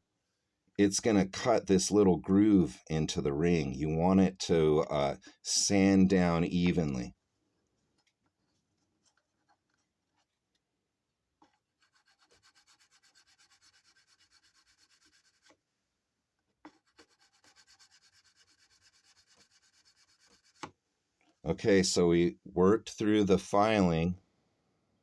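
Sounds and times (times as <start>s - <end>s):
metal file rubbing on ring: 11.8s - 15.6s, 16.8s - 20.6s.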